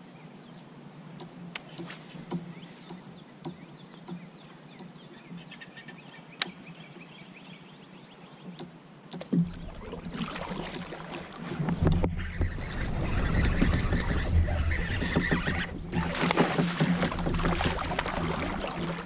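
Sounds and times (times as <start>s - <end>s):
rumbling wind-like noise: 11.4s - 19.0s.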